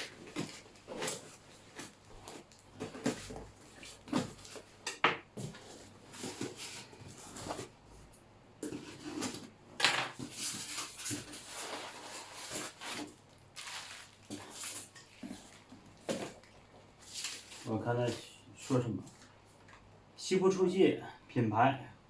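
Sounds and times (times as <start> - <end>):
packaging rustling and tearing: 10.2 - 19.3.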